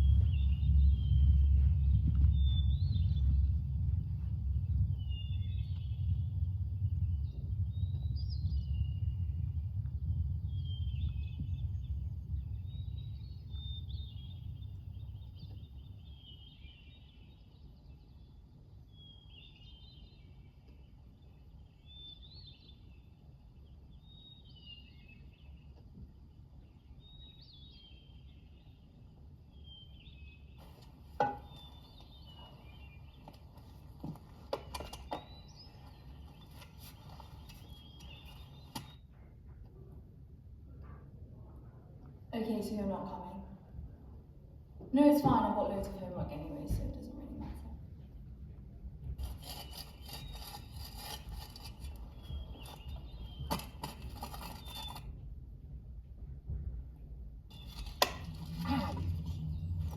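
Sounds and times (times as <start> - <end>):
low rumble: 0.0 - 17.8, 39.1 - 49.4, 55.0 - 59.9
songbird chirping: 0.0 - 39.9, 40.8 - 48.2, 49.2 - 55.3.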